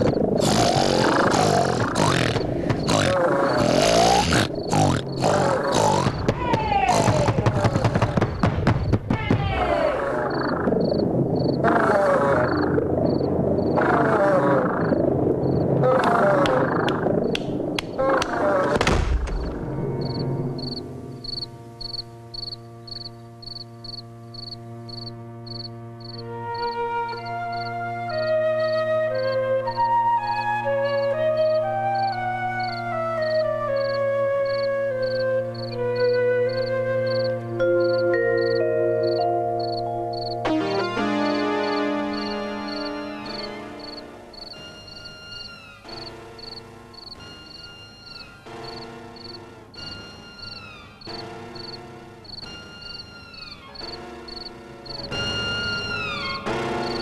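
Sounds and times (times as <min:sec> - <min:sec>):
cricket chirping: 0:00.0 - 0:06.3, 0:10.2 - 0:16.0, 0:19.7 - 0:30.4, 0:31.9 - 0:40.4, 0:41.2 - 0:57.0
cartoon snoring: 0:00.0 - 0:07.5
background music: 0:00.0 - 0:07.6, 0:19.0 - 0:57.0.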